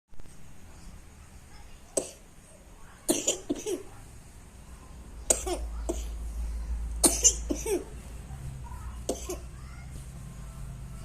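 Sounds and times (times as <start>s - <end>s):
small child coughing: 2.0s - 2.3s, 3.1s - 4.0s, 5.3s - 6.2s, 7.0s - 8.0s, 9.0s - 9.6s.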